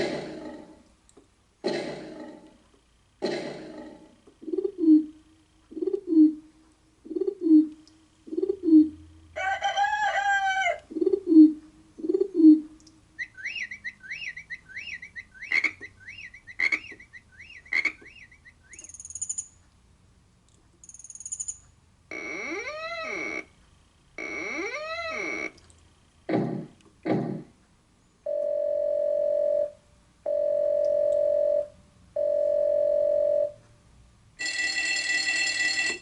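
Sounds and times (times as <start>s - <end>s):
keyboard pitched animal call: 9.8s - 18.8s, 22.1s - 23.5s, 24.2s - 25.6s
high chirps with sharp clicks: 12.8s - 19.6s
keyboard low hoots: 24.2s - 25.6s.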